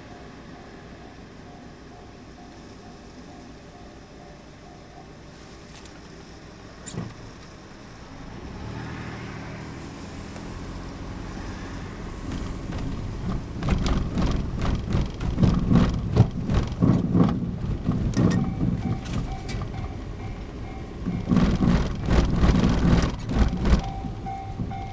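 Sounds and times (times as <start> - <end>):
train rumble: 0.0 - 24.9
wheels clattering over rail joints: 12.0 - 24.9.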